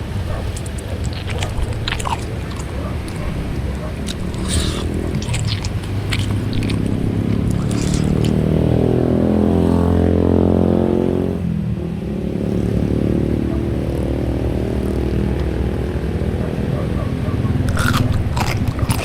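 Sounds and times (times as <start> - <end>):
sharp eating clicks: 0.0 - 8.9, 16.3 - 19.0
vehicle engine revving: 0.0 - 19.0.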